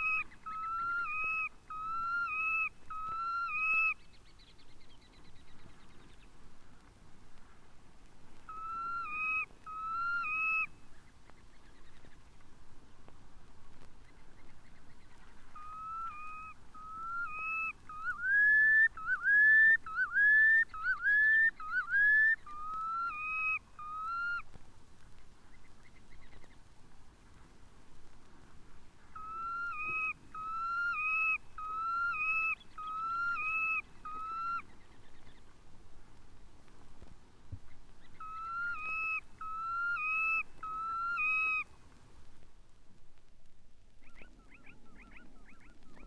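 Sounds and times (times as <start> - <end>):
bird whistling: 8.5 - 10.7, 15.6 - 24.4, 29.2 - 34.6.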